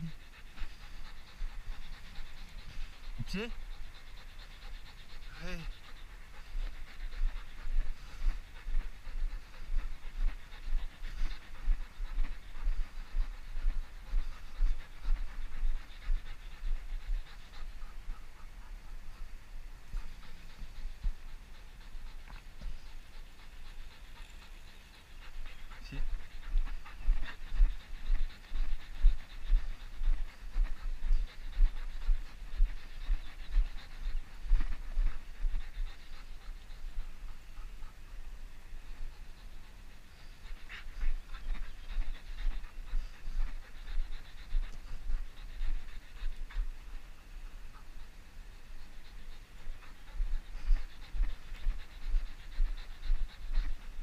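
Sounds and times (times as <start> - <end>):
steady low thuds: 0.0 - 37.8
dog panting: 0.0 - 54.0.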